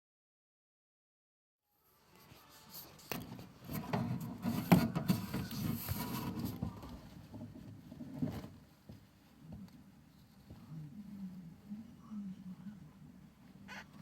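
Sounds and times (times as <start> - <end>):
rustling and scrabbling: 2.2 - 11.3
hamster pups squeaking: 13.6 - 14.0.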